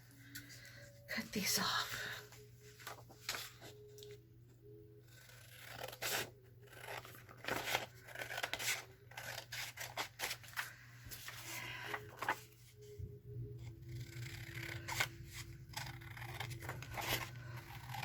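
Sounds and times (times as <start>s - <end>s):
scissors cutting paper: 5.0s - 10.5s, 13.6s - 18.0s.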